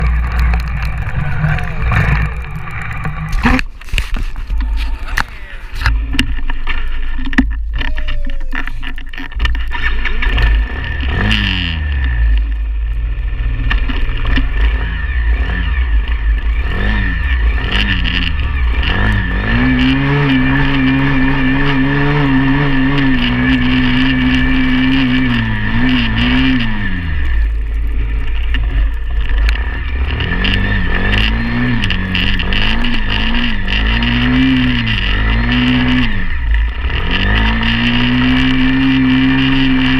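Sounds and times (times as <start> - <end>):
small motorbike engine revving: 9.7 - 39.9.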